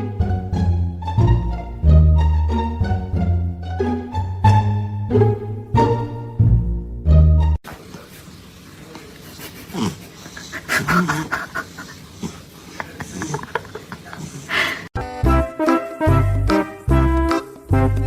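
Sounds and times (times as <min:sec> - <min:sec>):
music: 0:00.0 - 0:07.6, 0:15.0 - 0:18.0
dog panting: 0:09.2 - 0:14.9.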